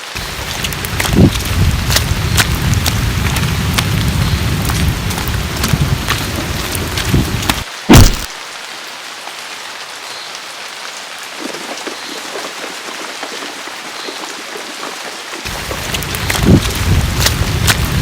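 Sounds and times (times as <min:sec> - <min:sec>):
heavy rain hissing: 0:00.0 - 0:18.0
thump: 0:07.9 - 0:08.3
deep rushing: 0:15.5 - 0:18.0.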